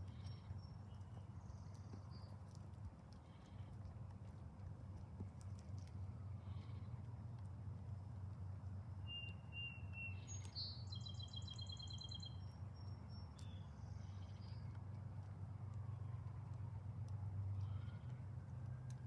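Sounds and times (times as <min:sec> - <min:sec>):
songbird singing: 0:00.0 - 0:02.6, 0:09.0 - 0:14.8.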